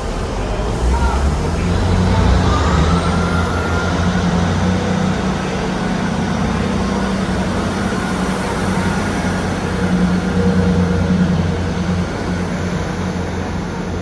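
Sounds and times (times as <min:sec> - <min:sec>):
train engine hum: 0:00.0 - 0:14.0
thin high tone: 0:02.0 - 0:06.2.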